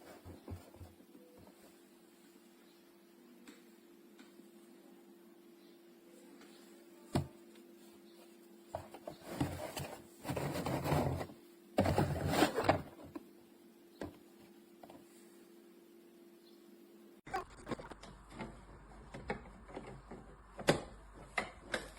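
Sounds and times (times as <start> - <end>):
faint steady hum: 0.0 - 21.9
trays rubbing and clattering: 8.8 - 13.1.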